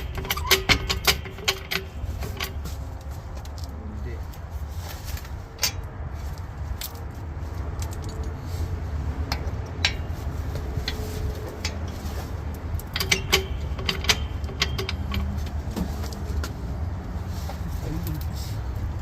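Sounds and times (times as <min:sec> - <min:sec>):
metal tools clinking: 0:00.0 - 0:03.7, 0:05.5 - 0:07.0, 0:12.8 - 0:15.5
steady low rumble: 0:00.0 - 0:19.0.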